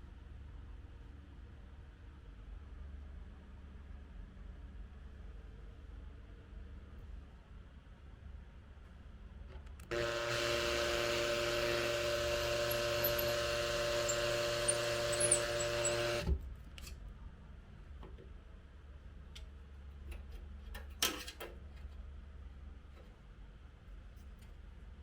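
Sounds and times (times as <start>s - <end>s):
electric drill running: 9.9s - 16.3s.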